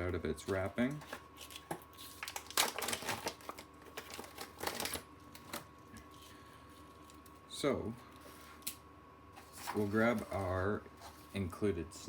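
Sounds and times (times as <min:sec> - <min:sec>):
plastic wrapping crinkling: 0:00.5 - 0:07.4.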